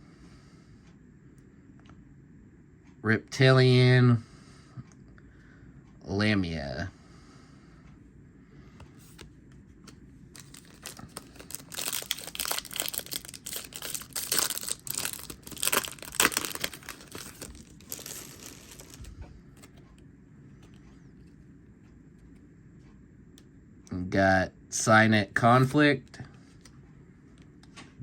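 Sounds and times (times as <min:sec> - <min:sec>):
foil pack tearing and crinkling: 0:10.4 - 0:19.1.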